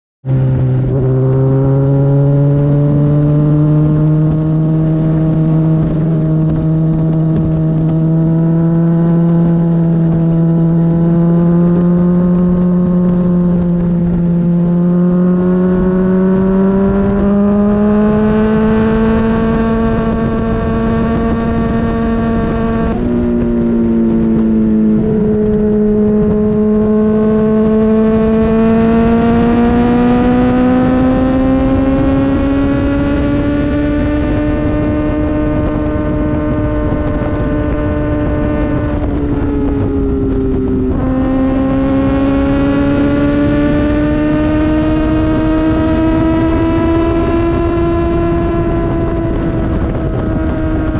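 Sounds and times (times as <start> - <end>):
motorcycle engine running: 0.2 - 50.9.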